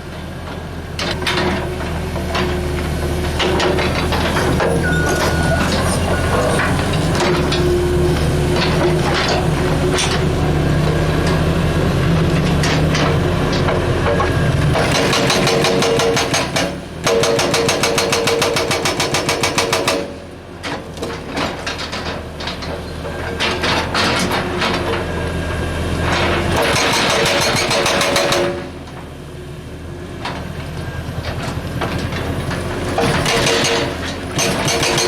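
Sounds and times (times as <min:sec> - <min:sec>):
excavator engine: 0:00.0 - 0:35.0
hydraulic breaker pounding rock: 0:12.4 - 0:22.7, 0:26.1 - 0:28.8, 0:31.3 - 0:35.0.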